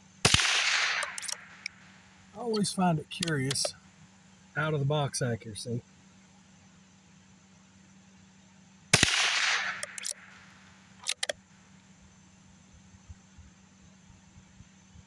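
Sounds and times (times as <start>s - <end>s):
rifle shot: 0.2s - 1.7s, 9.0s - 11.3s
rifle bolt clicks: 0.3s - 1.7s, 2.5s - 3.7s, 9.0s - 11.4s.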